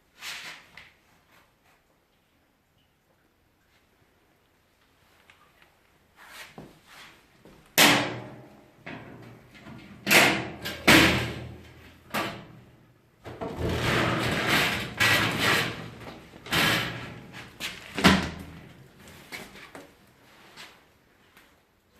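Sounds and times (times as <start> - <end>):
scraping and rattling: 13.4 - 18.0.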